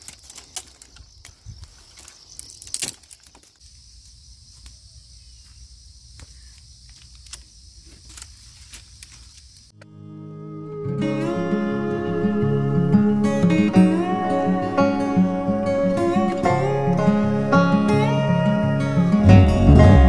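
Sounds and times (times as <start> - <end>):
twigs snapping and clicking: 0.0 - 3.6, 6.2 - 9.6
night insects chirping: 0.0 - 19.2.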